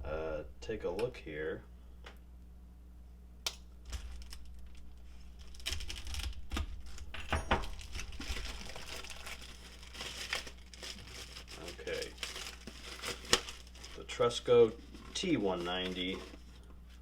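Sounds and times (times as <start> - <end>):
packaging rustling and crinkling: 3.8 - 17.0.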